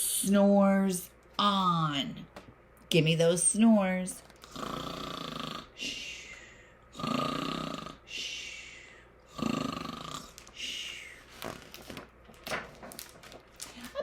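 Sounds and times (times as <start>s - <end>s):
person imitating snoring: 4.4s - 6.2s, 6.9s - 8.5s, 9.3s - 10.8s.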